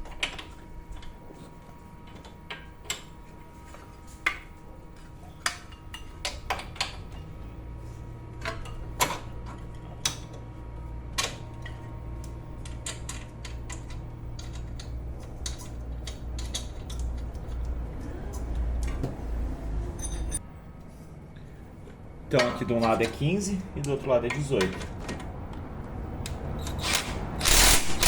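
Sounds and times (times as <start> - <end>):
low steady hum: 0.0 - 28.0
metal tools clinking: 20.0 - 20.4.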